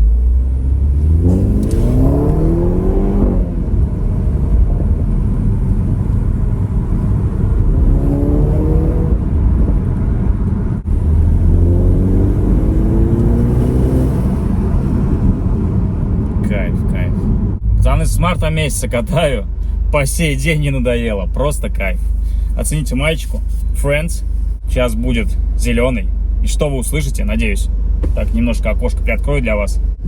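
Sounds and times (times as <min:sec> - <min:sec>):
car engine accelerating hard: 0:00.0 - 0:18.8.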